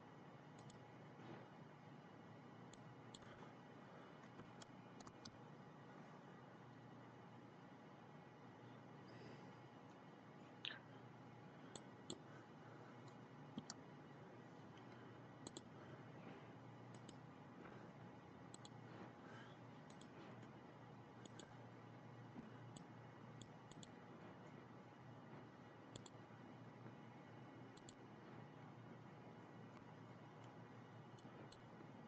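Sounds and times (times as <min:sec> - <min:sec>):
quiet room hum: 0:00.0 - 0:32.0
computer mouse clicks: 0:00.5 - 0:00.9, 0:02.7 - 0:03.4, 0:04.2 - 0:05.4, 0:11.7 - 0:12.3, 0:13.0 - 0:13.8, 0:14.8 - 0:15.7, 0:16.8 - 0:17.3, 0:18.4 - 0:19.0, 0:19.8 - 0:20.6, 0:21.2 - 0:21.6, 0:22.4 - 0:24.0, 0:25.3 - 0:26.3, 0:27.7 - 0:28.2, 0:29.7 - 0:32.0.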